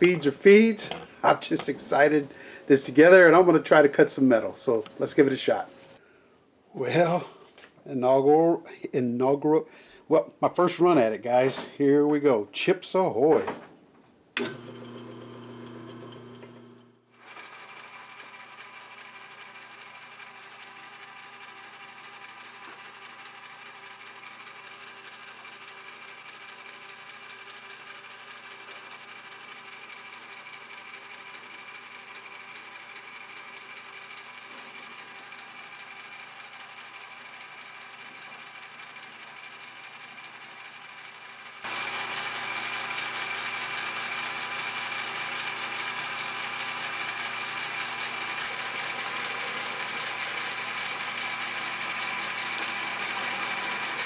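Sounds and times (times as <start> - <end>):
milling machine humming: 14.4 - 40.5, 41.6 - 54.0.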